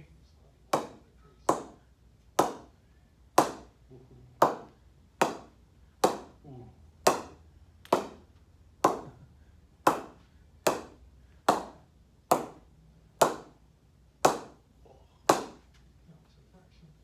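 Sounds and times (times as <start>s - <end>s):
ball knocking cricket bat: 0.8s - 1.8s, 2.4s - 2.7s, 3.4s - 3.7s, 4.4s - 6.4s, 7.1s - 9.2s, 9.9s - 12.6s, 13.2s - 13.5s, 14.2s - 14.6s, 15.3s - 15.7s.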